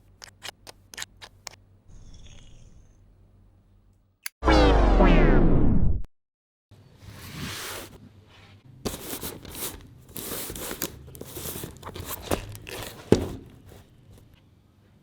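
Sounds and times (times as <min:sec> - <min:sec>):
crinkling and rustling: 0:08.9 - 0:14.4.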